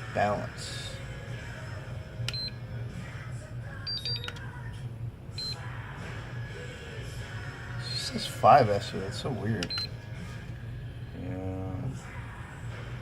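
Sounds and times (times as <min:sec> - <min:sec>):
low steady hum: 0:00.0 - 0:13.0
battery charger beeps: 0:02.3 - 0:02.6, 0:03.9 - 0:04.4, 0:05.4 - 0:05.6, 0:09.6 - 0:10.0.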